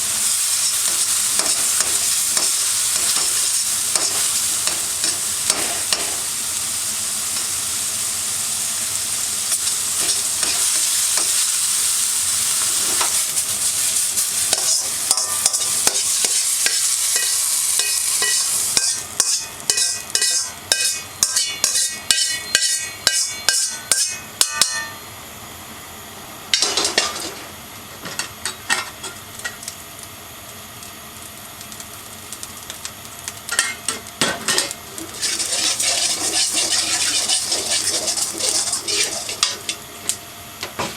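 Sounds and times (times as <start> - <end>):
food sizzling in a wok: 0.0 - 25.1, 26.5 - 40.9
wok ringing: 9.4 - 25.1, 26.5 - 27.4, 33.5 - 39.9
metal utensil scraping wok: 10.0 - 11.4, 12.6 - 25.0, 33.5 - 39.8.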